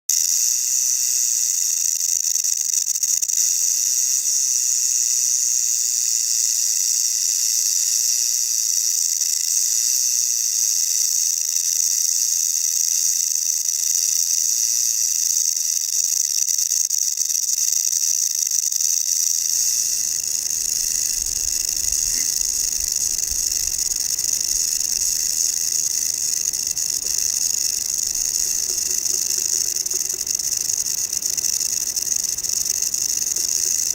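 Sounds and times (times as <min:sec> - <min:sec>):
rattlesnake rattling: 0:00.1 - 0:33.9
low rumble: 0:19.5 - 0:29.8.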